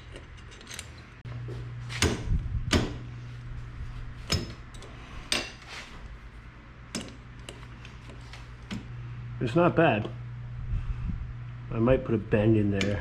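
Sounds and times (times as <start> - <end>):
metal parts clanking: 0.0 - 1.2
steady low hum: 0.0 - 13.0.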